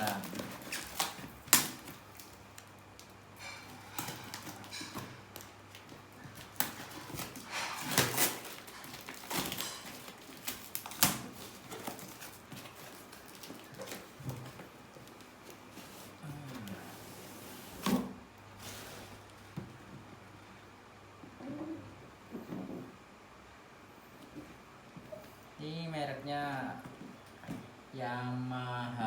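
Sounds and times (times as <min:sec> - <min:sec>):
cardboard rustling and scraping: 0:00.0 - 0:20.0.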